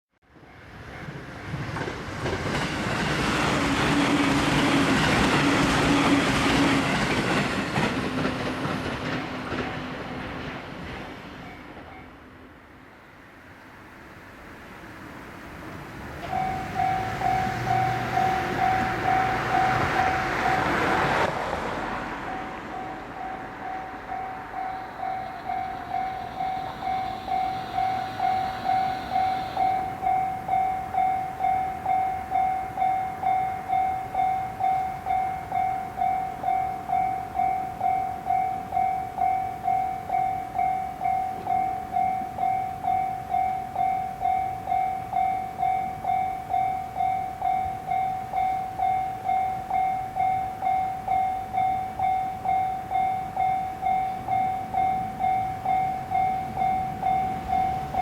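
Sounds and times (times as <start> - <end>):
level crossing warning bell: 11.4 - 12.2, 16.1 - 58.0.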